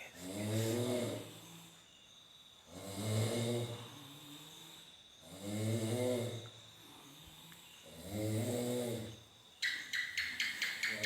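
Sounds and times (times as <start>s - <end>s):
quiet breathing: 0.0s - 9.4s
person snoring loudly: 0.2s - 1.4s, 2.7s - 4.4s, 5.2s - 6.5s, 7.8s - 9.2s.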